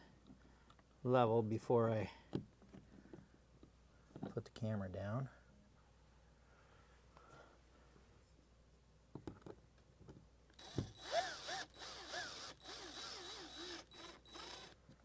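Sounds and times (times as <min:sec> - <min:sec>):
cordless drill driving screws: 0:10.6 - 0:14.8.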